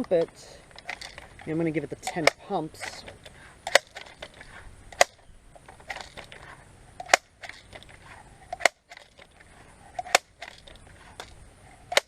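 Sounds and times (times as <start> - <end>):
mechanism clicks: 0.0 - 12.0
air gun pump clacking: 2.0 - 9.4.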